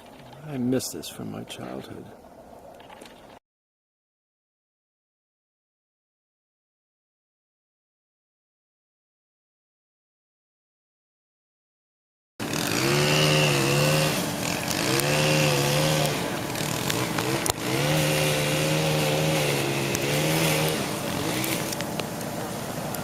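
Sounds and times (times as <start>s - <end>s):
engine revving: 12.4s - 22.0s.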